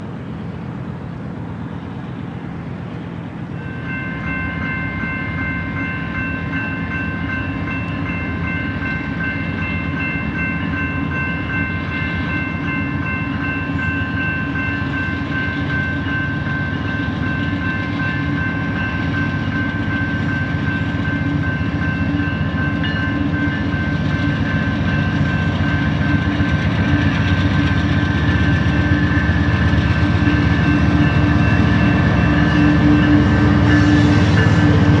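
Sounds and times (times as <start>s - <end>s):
diesel locomotive rumble: 0.0s - 35.0s.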